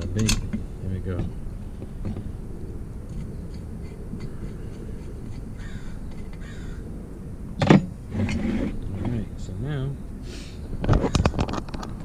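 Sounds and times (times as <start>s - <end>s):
harsh bird calls: 0.0s - 7.4s.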